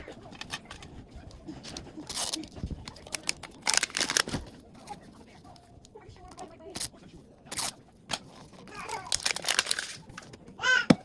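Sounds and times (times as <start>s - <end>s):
plastic packaging crinkling and tearing: 2.0s - 4.6s, 7.5s - 10.3s.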